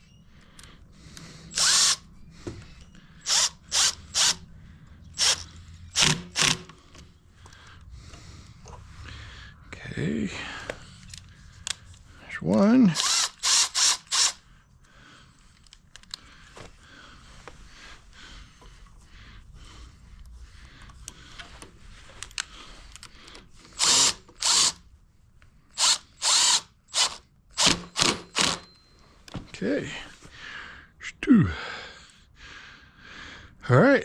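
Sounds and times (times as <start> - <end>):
power drill bursts: 1.5 - 2.0, 3.2 - 4.4, 5.2 - 6.8, 12.9 - 14.4, 23.7 - 24.8, 25.7 - 28.8.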